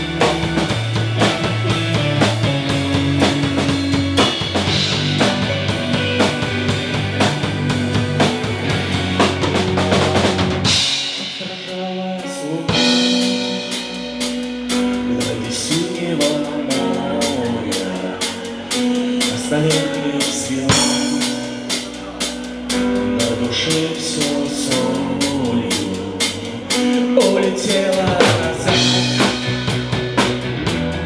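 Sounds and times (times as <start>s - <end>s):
live band playing instrumental: 0.0s - 31.0s.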